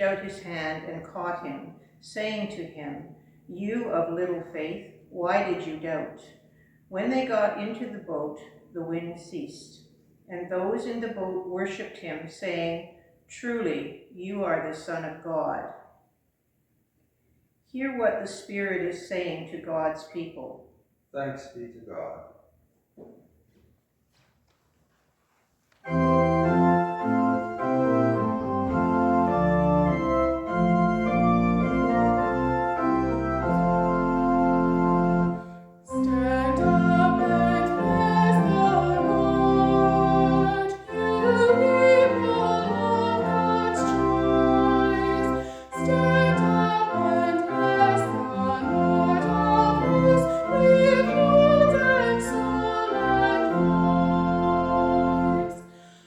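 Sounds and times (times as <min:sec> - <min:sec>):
organ chords: 0:25.8 - 0:56.0.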